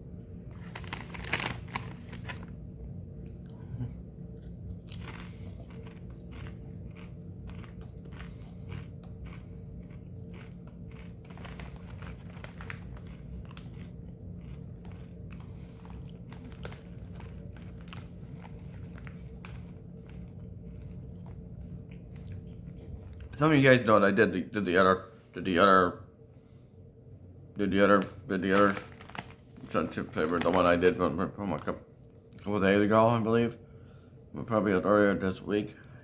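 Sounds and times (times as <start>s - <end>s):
steady low hum: 0.0s - 36.0s
person chewing crunchy chips: 3.2s - 23.4s, 28.6s - 31.6s.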